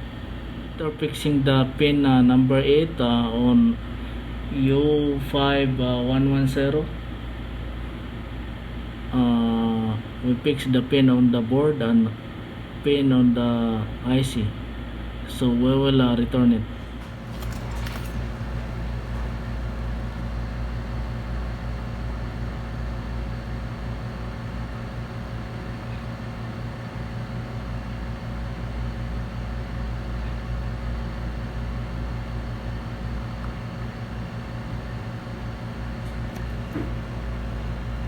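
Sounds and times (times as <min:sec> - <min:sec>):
hot air blower whirring: 0:16.6 - 0:38.0.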